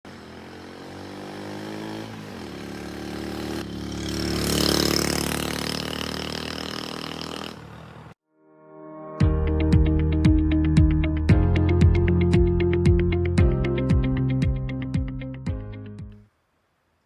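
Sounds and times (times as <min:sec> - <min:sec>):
motorcycle engine running: 0:00.1 - 0:08.2.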